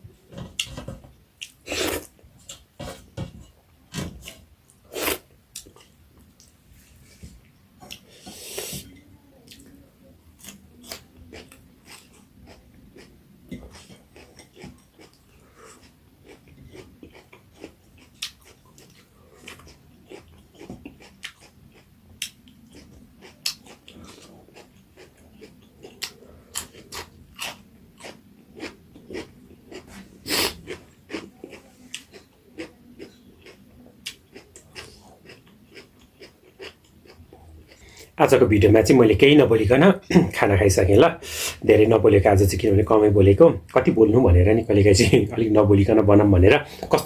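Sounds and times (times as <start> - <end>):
chewing and mouth smacking: 10.4 - 37.8.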